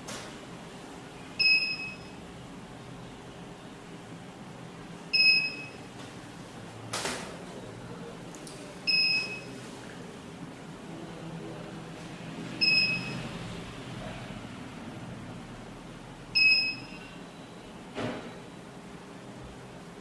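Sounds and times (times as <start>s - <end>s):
alarm keypad beeping: 1.4s - 2.2s, 5.1s - 5.9s, 8.9s - 9.5s, 12.6s - 13.2s, 16.4s - 17.1s.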